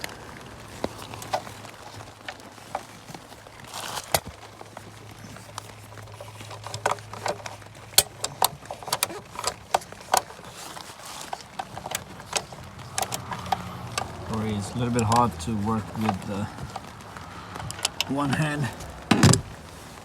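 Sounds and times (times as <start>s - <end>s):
hand tools clinking on metal: 5.2s - 19.4s.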